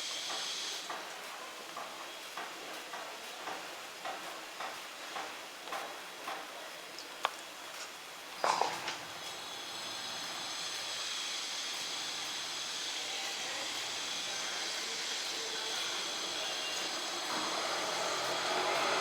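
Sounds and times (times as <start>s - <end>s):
food sizzling in hot oil: 0.0s - 0.9s, 8.1s - 19.0s.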